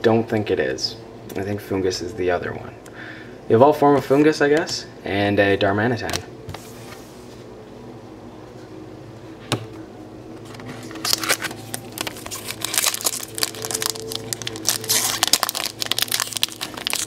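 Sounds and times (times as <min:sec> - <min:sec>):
foil wrapper crinkling: 0:10.9 - 0:17.0.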